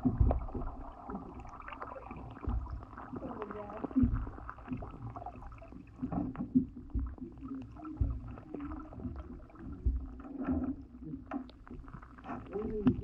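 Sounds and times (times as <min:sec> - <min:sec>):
paddle knocking against kayak hull: 0:00.0 - 0:01.6, 0:02.4 - 0:03.1, 0:06.0 - 0:13.0.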